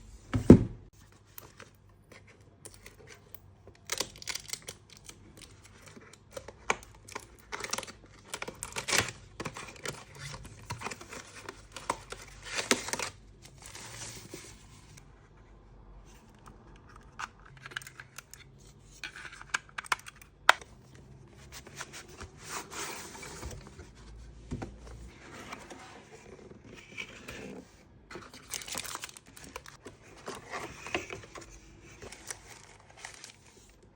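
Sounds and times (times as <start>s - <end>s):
packaging handled: 28.2s - 33.7s.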